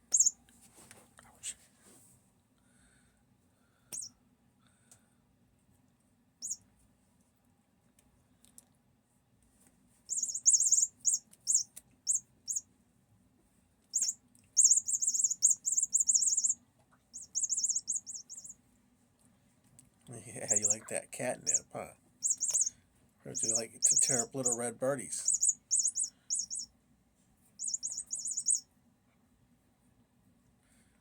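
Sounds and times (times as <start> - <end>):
toy bird chirping: 0.1 - 0.3, 10.1 - 12.6, 13.9 - 18.6, 20.4 - 20.8, 21.4 - 26.7, 27.6 - 28.7.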